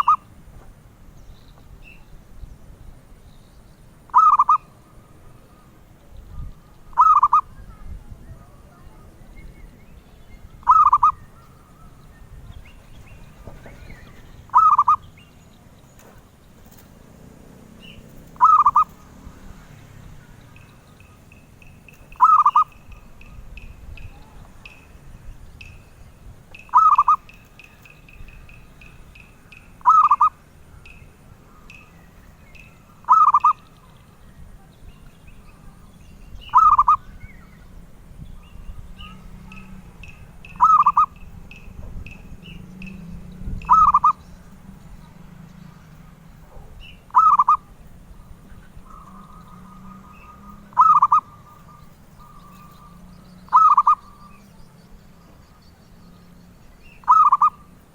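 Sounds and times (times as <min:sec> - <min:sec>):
dove cooing: 0:00.0 - 0:00.3, 0:04.1 - 0:09.3, 0:10.5 - 0:15.3, 0:16.7 - 0:25.0, 0:26.6 - 0:30.5, 0:31.2 - 0:34.0, 0:36.5 - 0:37.7, 0:38.5 - 0:41.5, 0:42.1 - 0:54.6, 0:57.0 - 0:57.9.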